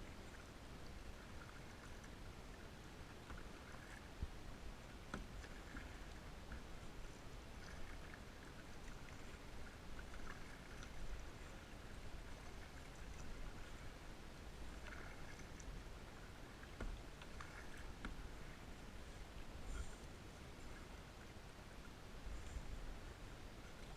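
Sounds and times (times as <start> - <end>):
faint water lapping: 0.0 - 23.9.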